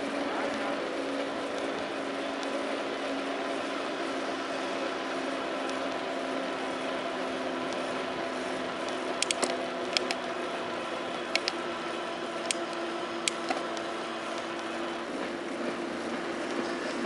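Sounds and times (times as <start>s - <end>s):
bicycle running noise: 0.0s - 17.0s
sharp clicks from bicycle: 8.8s - 10.2s.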